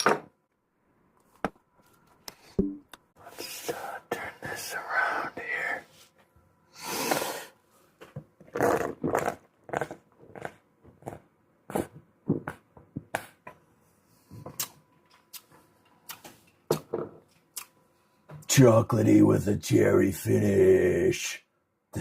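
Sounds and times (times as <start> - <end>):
gulping and gurgling beer: 8.5 - 11.9.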